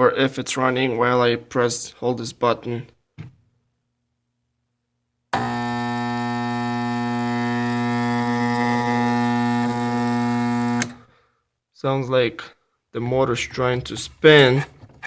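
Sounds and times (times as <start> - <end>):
stalled motor buzzing: 5.4 - 11.0.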